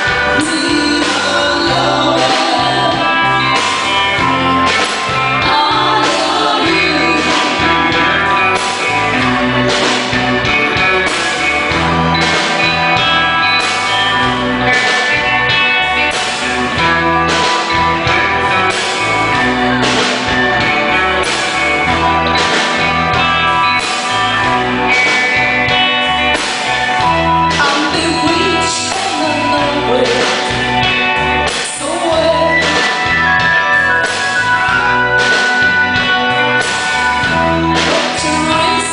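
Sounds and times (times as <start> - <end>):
guitar: 0.0 - 38.9
person singing: 0.2 - 3.8, 5.3 - 8.4, 27.5 - 30.6, 31.6 - 33.1, 37.7 - 38.9.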